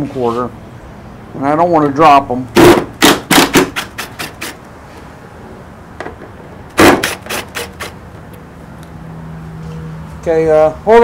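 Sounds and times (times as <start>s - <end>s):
impact driver hammering: 2.6s - 4.6s, 6.1s - 8.0s.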